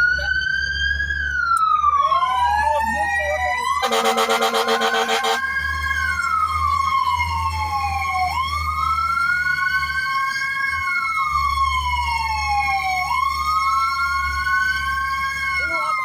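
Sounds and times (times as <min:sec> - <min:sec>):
fire truck siren wailing: 0:00.0 - 0:16.0
steady high tone: 0:03.3 - 0:05.4.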